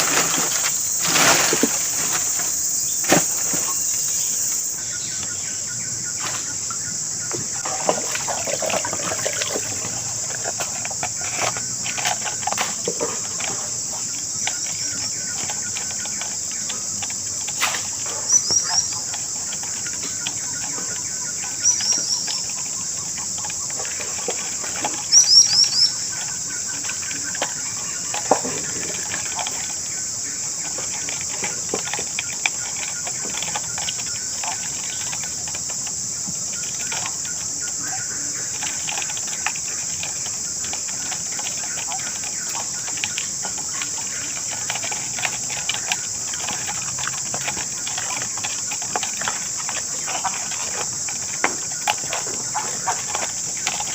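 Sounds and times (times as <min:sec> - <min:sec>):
high-pitched insect chorus: 0:00.0 - 0:53.9
bird chirping: 0:18.0 - 0:23.8, 0:25.1 - 0:28.6.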